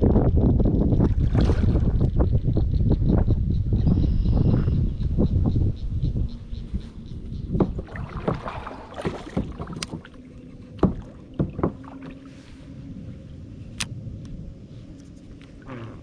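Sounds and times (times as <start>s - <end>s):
low rumble of wind: 0.0s - 16.0s
knocks and clicks of fishing gear: 7.5s - 12.2s.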